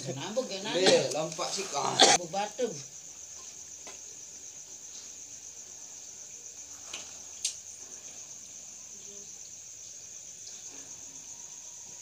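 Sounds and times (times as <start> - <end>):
high-pitched insect trilling: 0.0 - 12.0.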